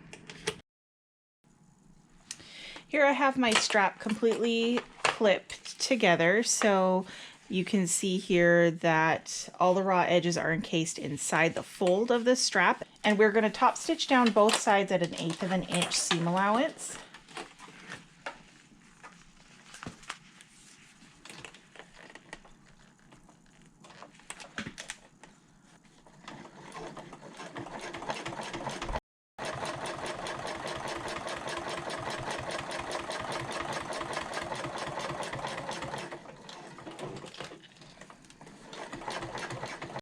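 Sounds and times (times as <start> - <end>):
sewing machine stitching: 26.0 - 40.0.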